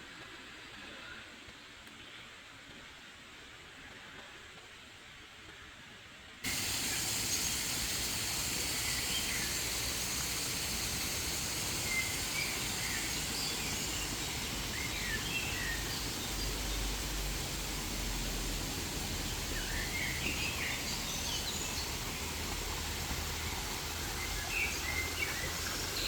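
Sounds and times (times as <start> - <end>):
faint hiss: 6.4 - 26.0
loud rushing hiss: 6.4 - 26.0
small birds chirping: 6.5 - 26.0.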